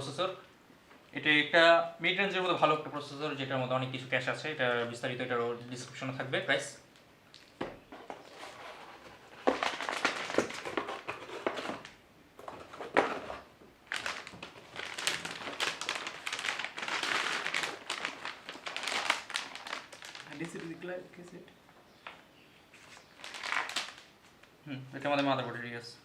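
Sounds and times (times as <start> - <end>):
packaging crinkling and rustling: 7.3 - 21.0, 22.0 - 24.4.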